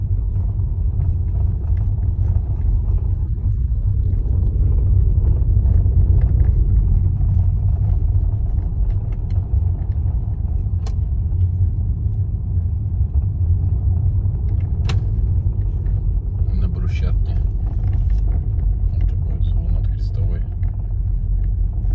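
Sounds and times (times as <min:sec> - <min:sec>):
road and tyre rumble: 0:00.0 - 0:21.9
knocks and rattles from car: 0:13.0 - 0:21.9.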